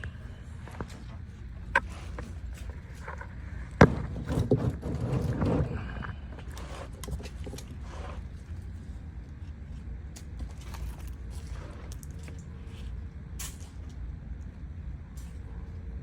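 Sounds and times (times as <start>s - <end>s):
parts clattering and scraping: 0.0s - 8.8s, 10.1s - 14.0s.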